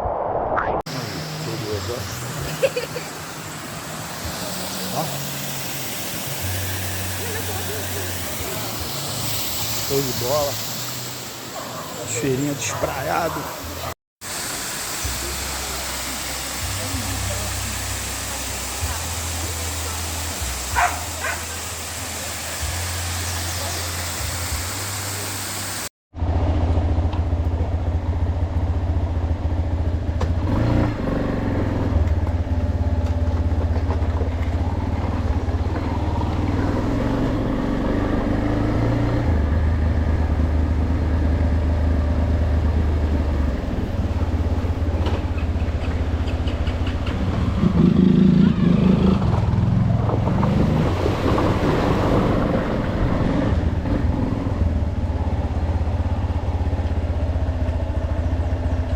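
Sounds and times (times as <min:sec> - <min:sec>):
motorcycle engine drone: 0:00.0 - 0:58.9
waterfall rushing water: 0:00.9 - 0:25.9.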